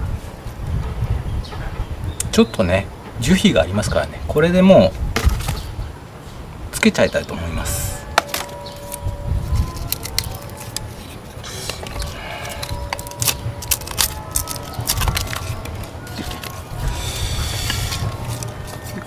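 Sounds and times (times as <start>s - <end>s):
knife scraping bark: 8.2s - 19.0s.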